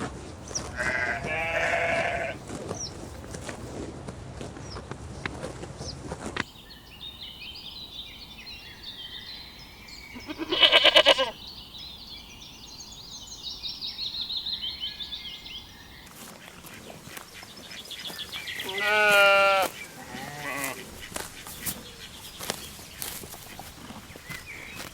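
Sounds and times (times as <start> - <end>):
birds chirping: 0.0 - 3.7, 4.6 - 24.9
sheep bleating: 0.7 - 2.4, 10.2 - 11.4, 18.6 - 20.9.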